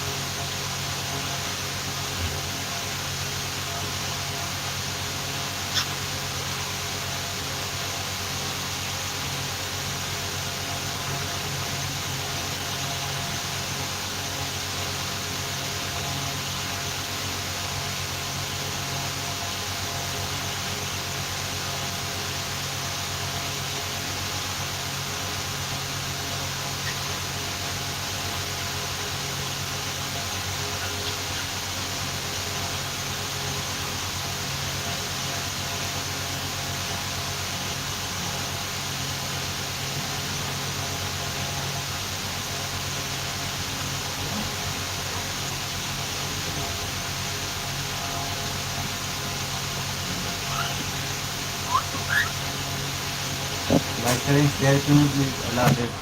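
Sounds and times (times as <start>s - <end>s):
steady hiss: 0.0s - 56.0s
low even hum: 44.1s - 56.0s.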